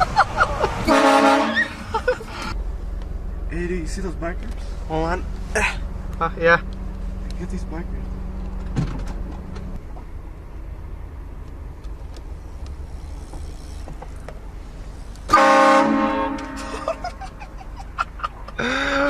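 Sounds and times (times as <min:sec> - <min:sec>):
vehicle driving rumble: 0:00.0 - 0:19.0
train horn blasting chord: 0:00.9 - 0:01.6, 0:15.3 - 0:16.7.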